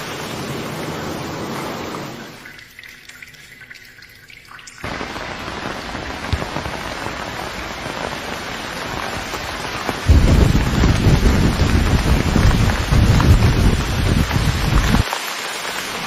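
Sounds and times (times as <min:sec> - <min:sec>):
heavy rain: 0:00.0 - 0:02.4, 0:04.8 - 0:16.0
loud low rumble: 0:10.1 - 0:15.0.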